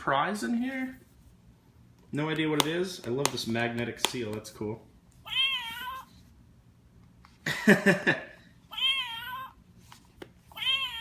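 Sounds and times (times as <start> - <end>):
recorded cat meows: 5.2 - 6.1, 8.7 - 9.6, 10.5 - 11.0.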